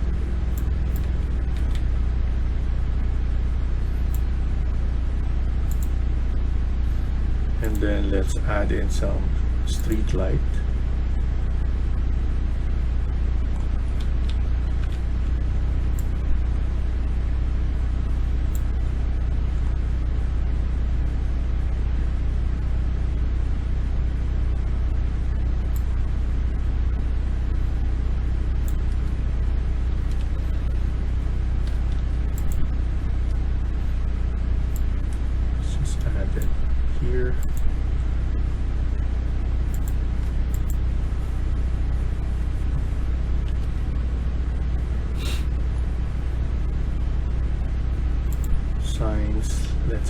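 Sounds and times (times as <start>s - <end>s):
steady low hum: 0.0s - 50.0s
faint clicks: 31.6s - 32.6s, 37.4s - 37.7s, 48.3s - 48.6s.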